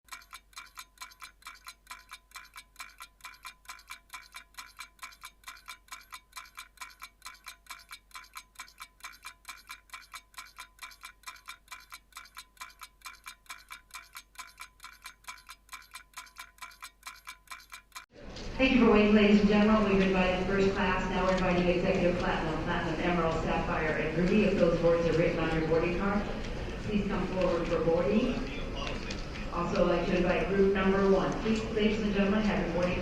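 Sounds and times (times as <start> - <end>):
rapid ticking with chiming ring: 0.0 - 18.1.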